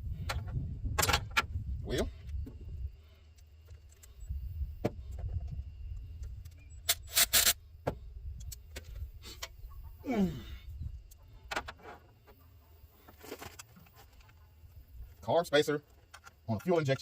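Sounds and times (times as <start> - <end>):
grunt: 10.0 - 10.6.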